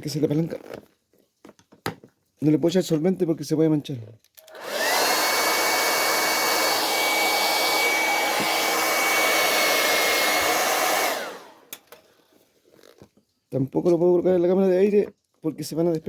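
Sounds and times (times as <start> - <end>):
hot-air blower fan whine: 4.5 - 11.8.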